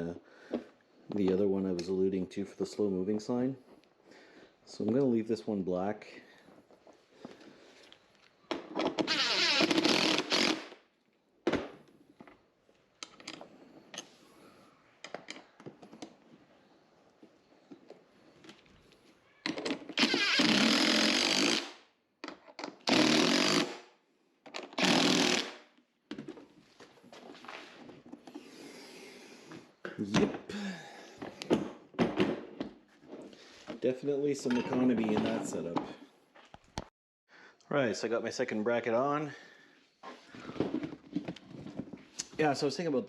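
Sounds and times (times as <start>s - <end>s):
power driver driving screws: 9.0s - 10.8s, 19.6s - 21.8s, 22.7s - 23.8s, 24.6s - 25.6s
handling clicks and knocks: 34.4s - 36.0s.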